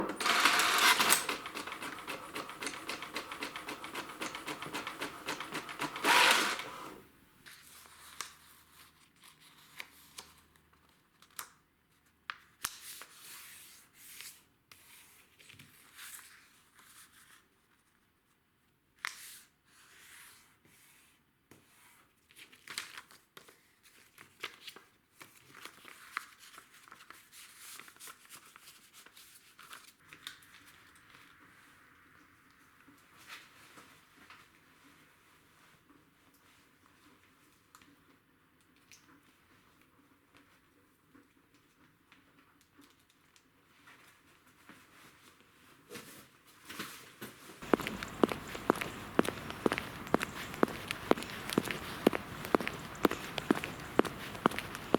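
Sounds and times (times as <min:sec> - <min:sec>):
paper crackling and rustling: 0:00.0 - 0:10.3, 0:22.5 - 0:30.2, 0:47.7 - 0:54.9
small clicks: 0:47.6 - 0:54.9.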